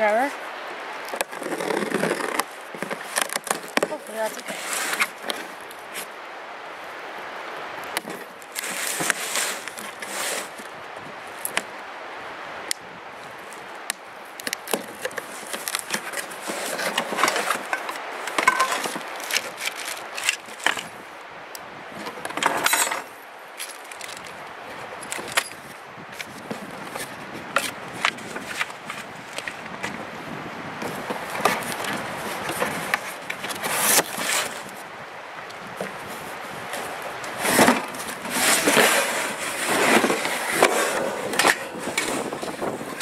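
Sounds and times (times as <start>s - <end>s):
rustling or scraping: 1.0s - 6.2s, 8.0s - 11.7s, 14.4s - 21.1s, 21.9s - 30.2s, 30.8s - 35.0s, 35.6s - 43.0s
grill parts clicking and knocking: 14.6s - 20.9s.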